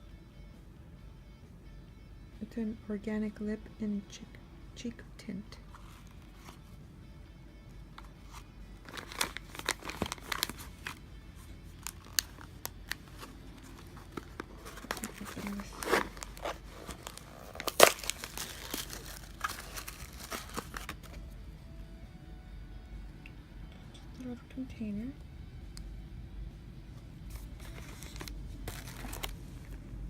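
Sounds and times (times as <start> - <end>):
packaging crinkling and tearing: 8.3 - 11.0, 11.8 - 21.2, 27.3 - 29.8.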